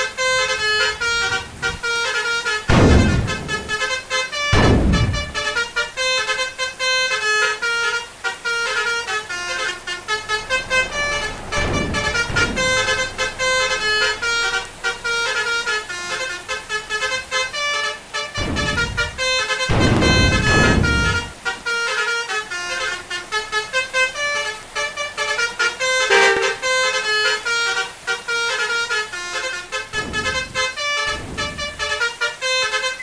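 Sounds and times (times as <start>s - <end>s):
rushing noise bursts: 0.0s - 6.8s, 9.0s - 16.8s, 18.2s - 21.8s, 29.7s - 32.4s
bus air horns playing melody: 0.0s - 33.0s.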